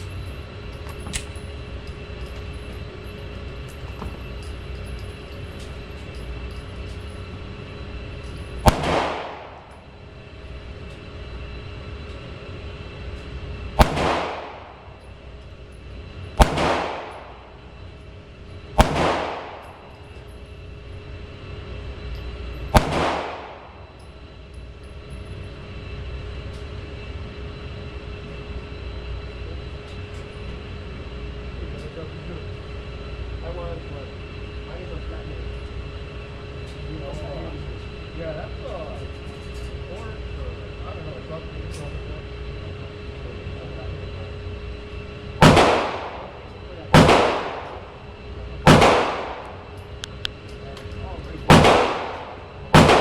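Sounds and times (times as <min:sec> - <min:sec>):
steady background hum: 0:00.0 - 0:53.0
pistol shots with echo: 0:08.6 - 0:09.6, 0:13.8 - 0:14.8, 0:16.4 - 0:17.4, 0:18.8 - 0:19.8, 0:22.7 - 0:23.8, 0:45.4 - 0:48.0, 0:48.6 - 0:49.7, 0:51.5 - 0:53.0.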